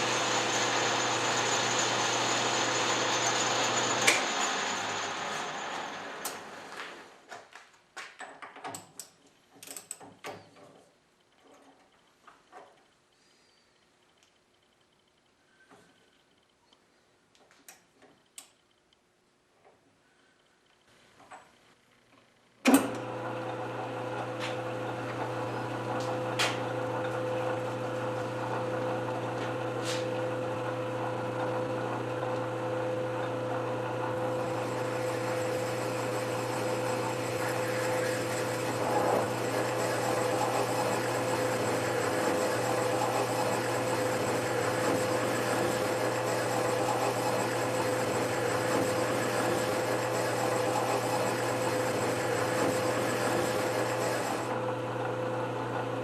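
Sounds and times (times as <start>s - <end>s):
metal lathe humming: 0.0s - 6.5s, 23.0s - 56.0s.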